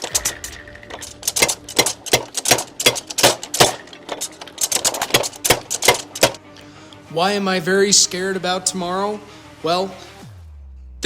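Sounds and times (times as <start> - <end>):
hammer striking metal: 0.0 - 6.4.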